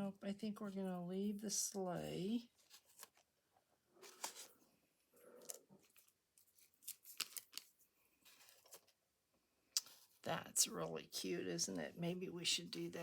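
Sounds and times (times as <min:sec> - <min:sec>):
paper rustling: 0:02.5 - 0:03.3, 0:04.0 - 0:04.6, 0:05.4 - 0:09.0.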